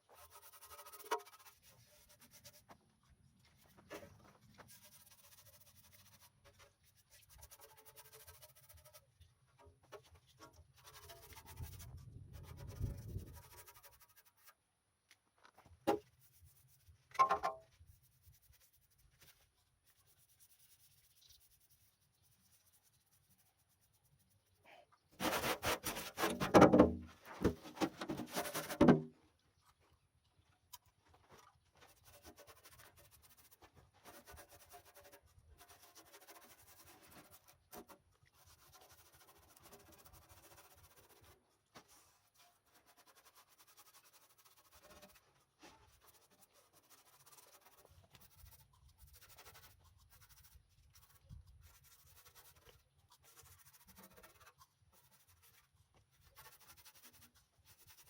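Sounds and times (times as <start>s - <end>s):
faint rubbing and scratching: 0.0s - 58.0s
rapid scraping: 25.2s - 29.0s.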